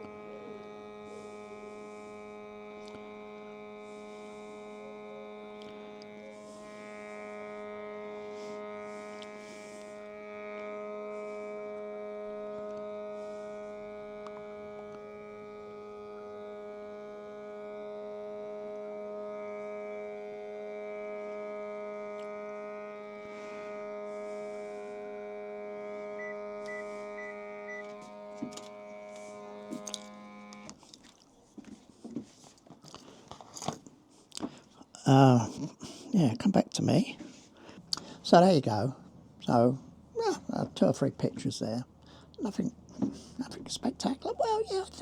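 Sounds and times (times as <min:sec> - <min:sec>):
steady electrical hum: 0:00.0 - 0:45.0
short high beeps: 0:26.2 - 0:28.0.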